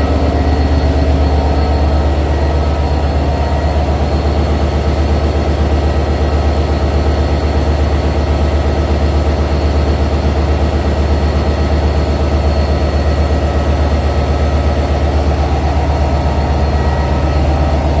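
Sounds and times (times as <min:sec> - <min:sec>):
high-pitched whines: 0:00.0 - 0:06.8, 0:11.9 - 0:18.0
locomotive diesel engine humming: 0:00.0 - 0:18.0.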